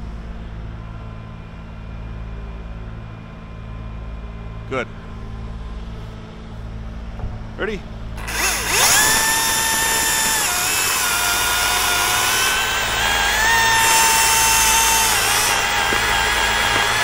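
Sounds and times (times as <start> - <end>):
steady low hum: 0.0 - 17.0
chainsaw cutting tree: 8.2 - 17.0.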